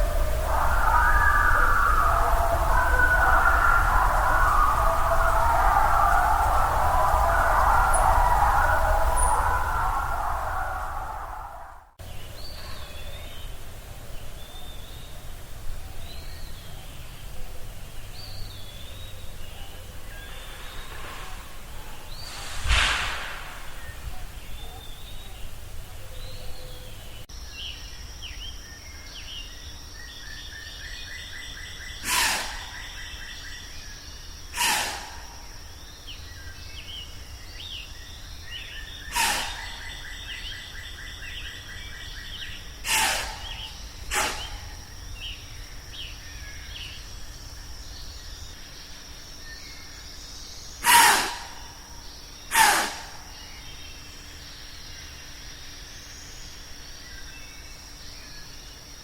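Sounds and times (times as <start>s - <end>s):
high insect drone: 0.0s - 59.0s
small chirping calls: 0.0s - 59.0s
short sharp loud sound: 22.2s - 24.0s.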